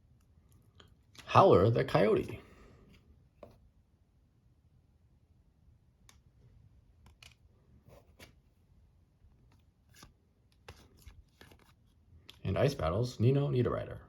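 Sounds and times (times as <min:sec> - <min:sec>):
trading cards clicking and rustling: 0:09.4 - 0:12.4.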